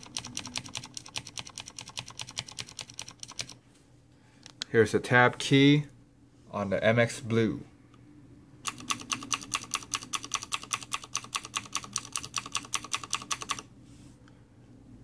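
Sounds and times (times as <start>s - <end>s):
rapid keyboard key clicks: 0.0s - 3.6s, 8.7s - 13.7s.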